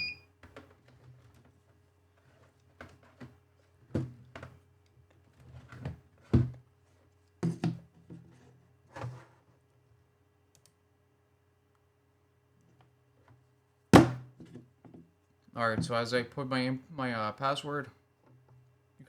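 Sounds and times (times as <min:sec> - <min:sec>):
low electrical hum: 0:00.0 - 0:19.0
equipment thumping on a desk: 0:14.0 - 0:14.6.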